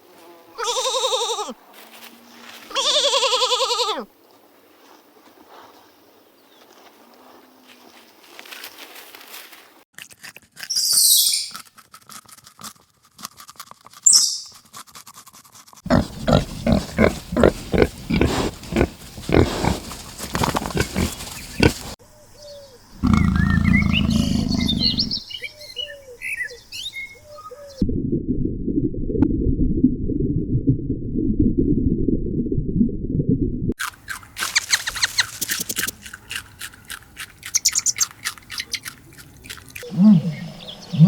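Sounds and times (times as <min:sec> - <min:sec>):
short chirps: 0:10.7 - 0:11.6, 0:14.1 - 0:14.5
quick rhythmic animal calls: 0:15.8 - 0:22.0, 0:34.0 - 0:40.4
loud low animal call: 0:23.0 - 0:25.2.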